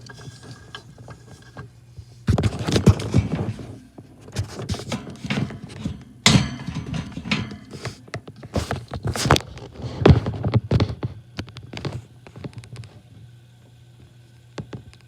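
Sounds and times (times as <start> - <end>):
hard objects knocking and clattering: 2.3 - 9.4.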